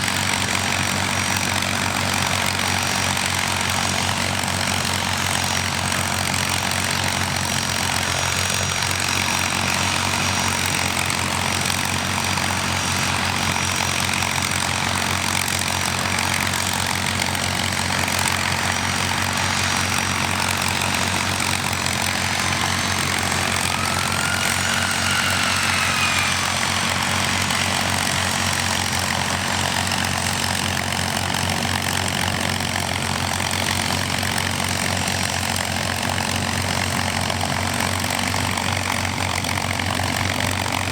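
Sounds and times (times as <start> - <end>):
piston aircraft engines running: 0.0 - 40.9
faint whine: 18.1 - 30.1.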